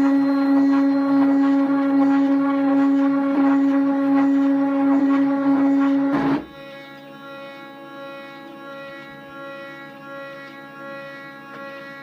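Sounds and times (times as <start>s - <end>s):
stepper motors whining: 0.0s - 12.0s.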